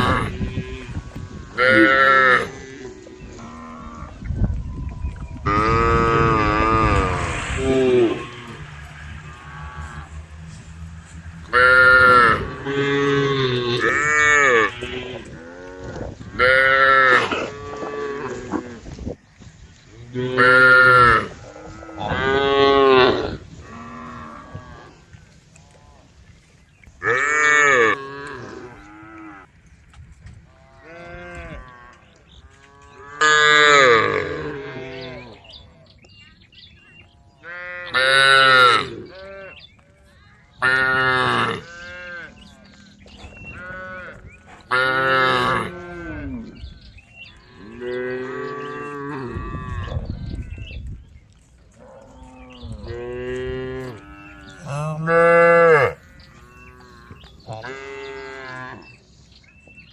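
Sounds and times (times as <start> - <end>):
cattle mooing: 5.5 - 18.8, 43.4 - 46.6, 51.8 - 59.0.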